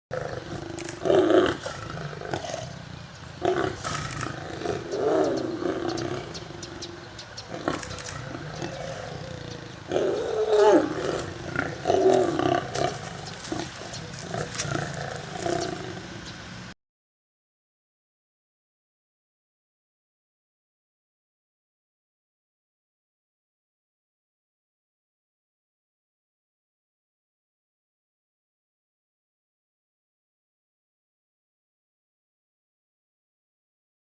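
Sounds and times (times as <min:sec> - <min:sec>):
lions roaring: 0:00.1 - 0:16.3.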